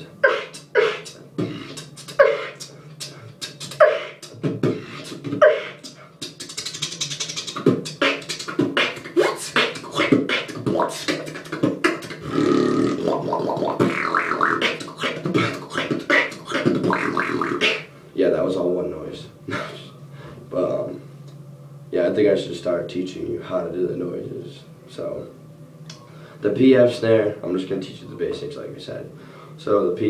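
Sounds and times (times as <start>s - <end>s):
beatboxing: 0.0s - 17.9s, 19.5s - 20.0s.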